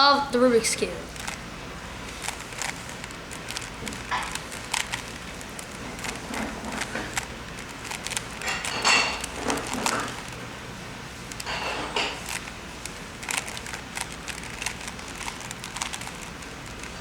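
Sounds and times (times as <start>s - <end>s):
puzzle cube clicking as twisted: 1.1s - 1.4s, 2.0s - 10.4s, 12.1s - 17.0s.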